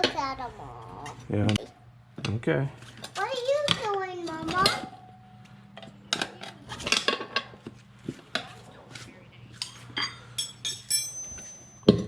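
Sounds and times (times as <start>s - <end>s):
low steady hum: 0.0s - 12.0s
metal tools clinking: 10.0s - 12.0s
ringing metal strike: 10.4s - 12.0s.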